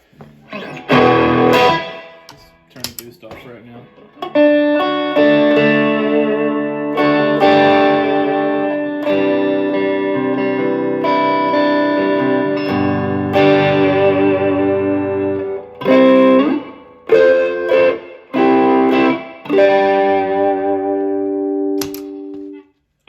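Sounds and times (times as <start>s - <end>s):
overdriven electric guitar chords: 0.0s - 2.7s, 3.8s - 22.8s.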